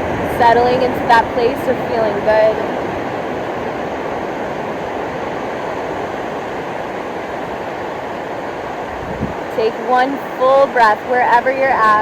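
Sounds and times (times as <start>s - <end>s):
ocean waves breaking: 0.0s - 12.0s.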